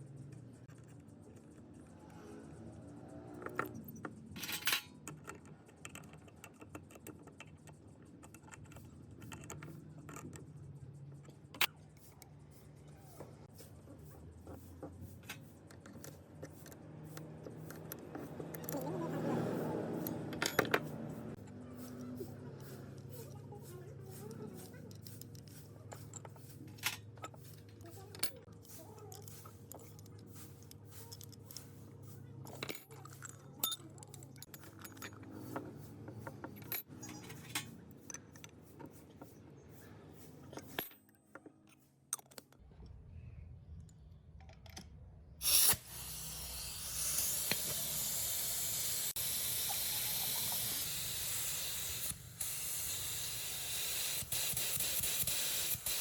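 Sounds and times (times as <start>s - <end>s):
small metal parts clinking: 0.2s - 12.2s, 19.9s - 39.1s, 40.4s - 42.6s
spray gun hissing: 45.4s - 56.0s.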